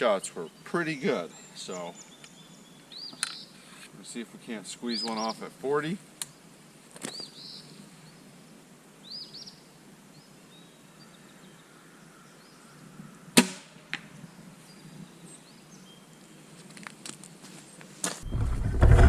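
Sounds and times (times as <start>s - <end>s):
birds chirping: 0.0s - 13.3s, 18.2s - 19.0s
crossbow firing snap: 13.4s - 14.1s.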